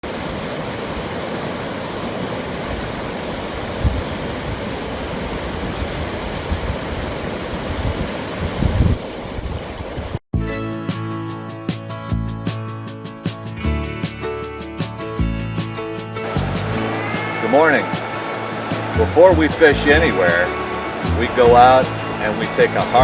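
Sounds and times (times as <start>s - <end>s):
river water rushing: 0.0s - 10.2s, 16.2s - 23.0s
wind buffeting microphone: 1.9s - 10.2s
acoustic guitar music: 10.4s - 23.0s.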